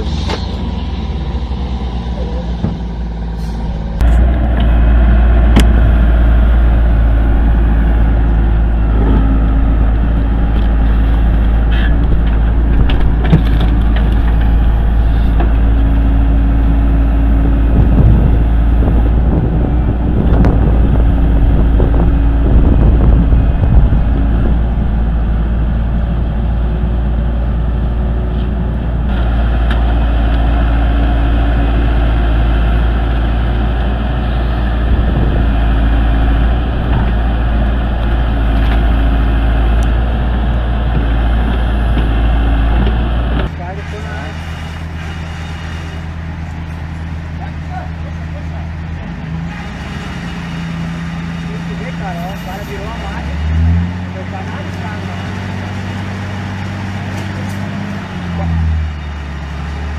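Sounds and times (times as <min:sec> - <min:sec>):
diesel machinery rumbling: 0:00.0 - 0:59.9
knocks and clanks: 0:11.4 - 0:15.8.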